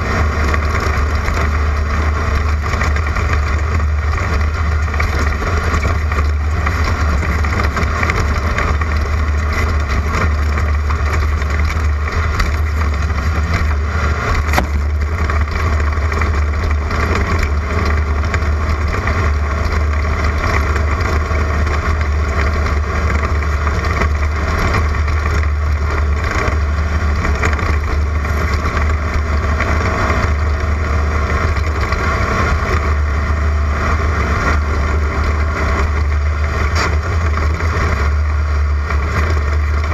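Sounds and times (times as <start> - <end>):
race car engine running hard: 0.0 - 39.9
road and wind noise: 0.0 - 39.9.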